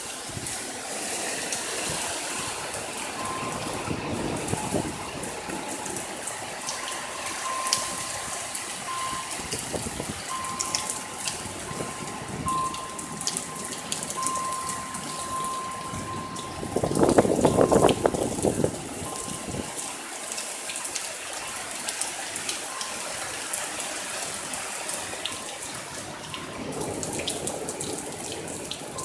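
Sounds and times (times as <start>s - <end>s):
rain rushing: 0.0s - 29.0s
wind gust: 1.8s - 19.7s.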